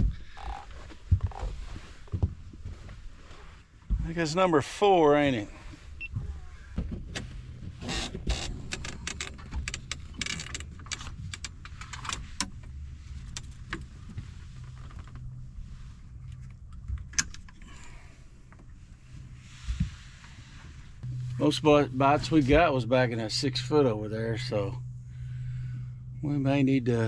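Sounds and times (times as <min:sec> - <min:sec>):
small electric motor humming: 0:07.8 - 0:12.0.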